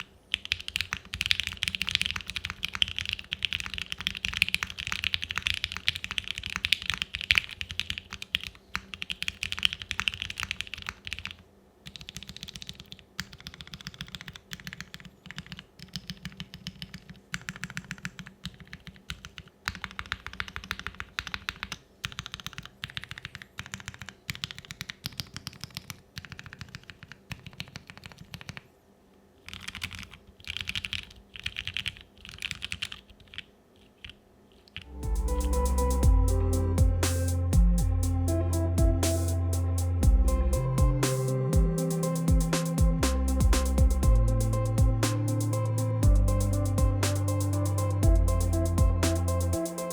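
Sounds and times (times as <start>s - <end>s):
mechanical keyboard typing: 0.0s - 28.6s, 29.5s - 35.6s.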